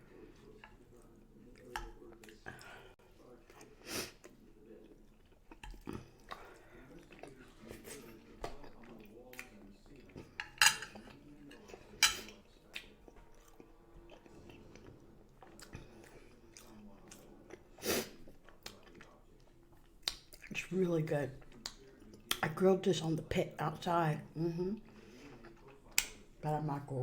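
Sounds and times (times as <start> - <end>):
wet chewing mouth sounds: 0.1 - 22.6, 24.4 - 26.3.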